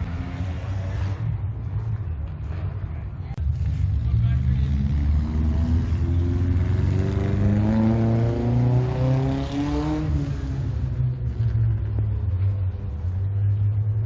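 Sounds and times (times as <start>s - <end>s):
car engine accelerating: 3.4s - 14.0s.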